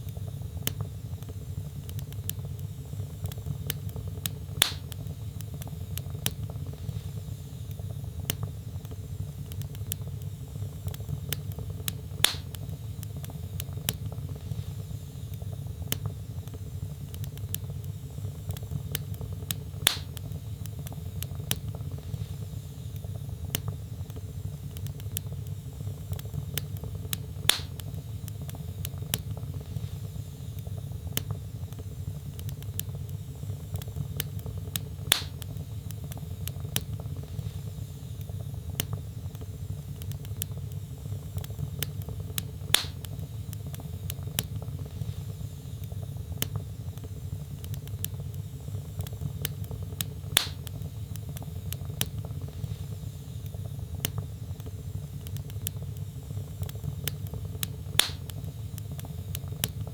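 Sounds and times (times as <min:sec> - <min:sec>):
burning logs popping: 0:00.0 - 0:59.9
fire crackling: 0:00.0 - 0:59.9.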